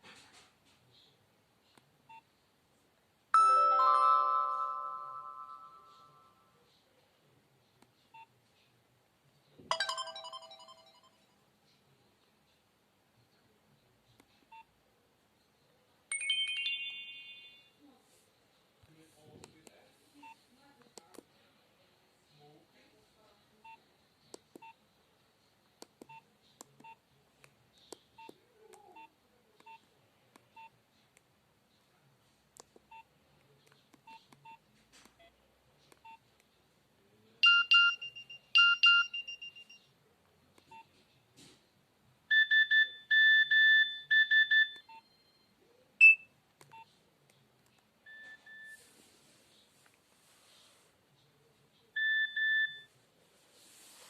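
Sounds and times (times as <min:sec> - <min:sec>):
phone ringing chimes: 0:03.4 - 0:06.4, 0:09.7 - 0:11.2
phone key beeps: 0:37.4 - 0:39.8, 0:42.3 - 0:45.0, 0:46.0 - 0:46.9, 0:52.0 - 0:52.9
quick phone beeps: 0:37.4 - 0:39.8.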